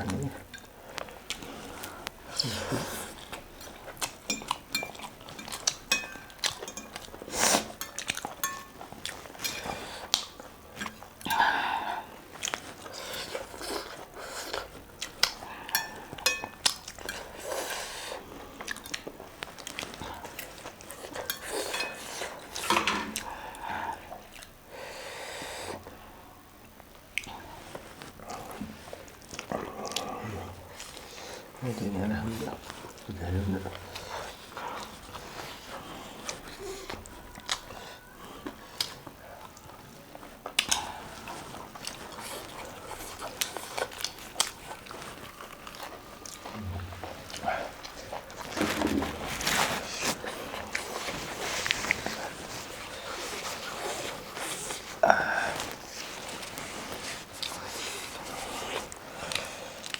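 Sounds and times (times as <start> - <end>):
chewing and biting food: 0.0 - 11.4, 12.1 - 23.4, 27.1 - 55.0
cutlery and dishes clinking: 3.6 - 11.4, 15.7 - 17.9, 19.9 - 23.3.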